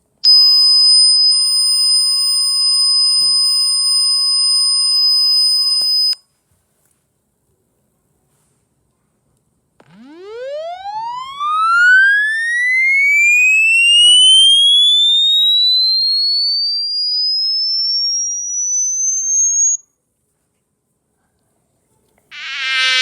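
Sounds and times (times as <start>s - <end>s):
electronic tone sweeping upward: 9.8s - 19.8s, 22.4s - 23.0s.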